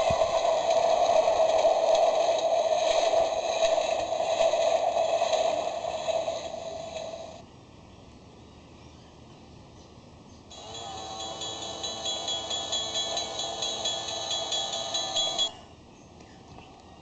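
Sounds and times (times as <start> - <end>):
toy speaker train rumble: 0.0 - 7.4, 10.5 - 15.6.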